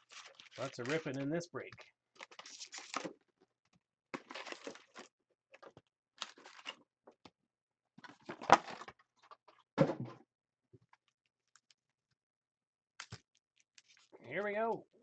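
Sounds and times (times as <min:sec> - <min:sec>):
foil packs tearing and rustling: 0:00.0 - 0:01.3, 0:02.2 - 0:03.1.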